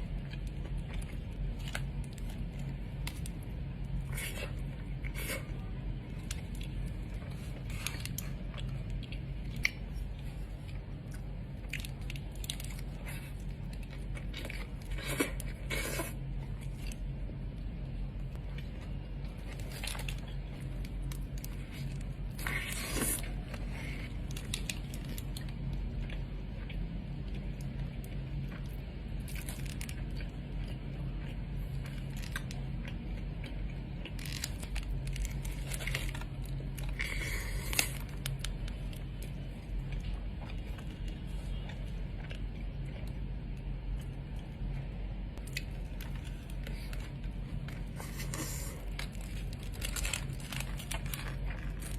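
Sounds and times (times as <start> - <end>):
low hum: 0.0 - 51.9
person chewing food: 0.0 - 51.9
clicks and crunches: 18.3 - 44.5, 45.4 - 51.9.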